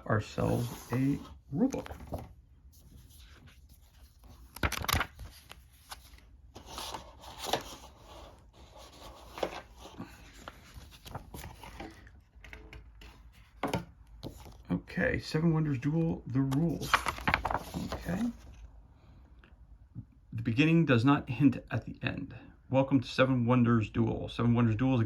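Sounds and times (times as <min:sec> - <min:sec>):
paper and cardboard rustling: 0:00.2 - 0:14.7, 0:16.4 - 0:18.6.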